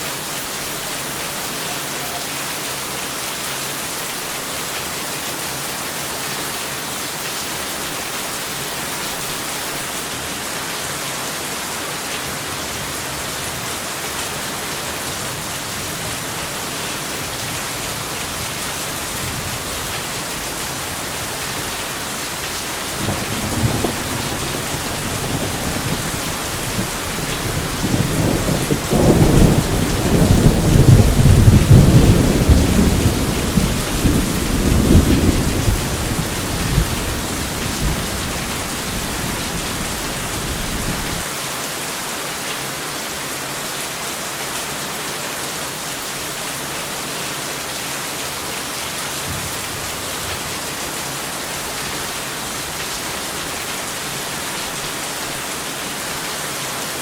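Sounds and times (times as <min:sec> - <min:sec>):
steady rain hissing: 0:00.0 - 0:57.0
thunder rumbling: 0:17.3 - 0:41.2.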